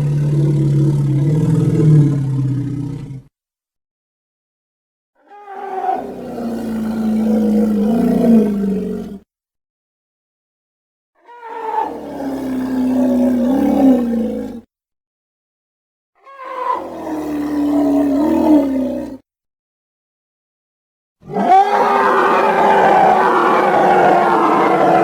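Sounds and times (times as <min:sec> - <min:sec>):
animal roars: 0:00.0 - 0:03.3, 0:05.3 - 0:09.2, 0:11.3 - 0:14.7, 0:16.2 - 0:19.2, 0:21.2 - 0:25.0.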